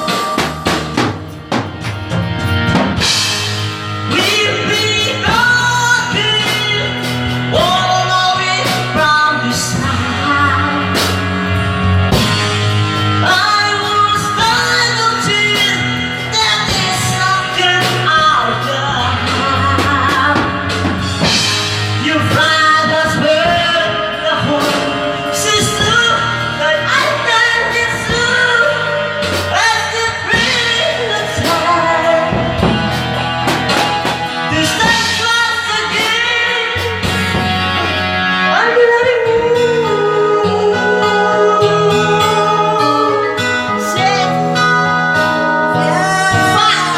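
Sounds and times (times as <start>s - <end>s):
steady drum beats: 0.0s - 40.0s, 41.0s - 46.9s
song with band: 0.0s - 46.9s.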